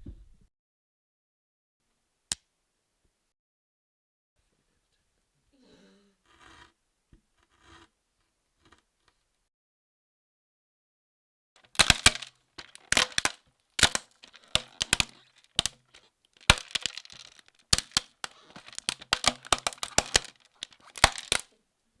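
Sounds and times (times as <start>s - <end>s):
sharp cracks and snaps: 11.6s - 21.5s.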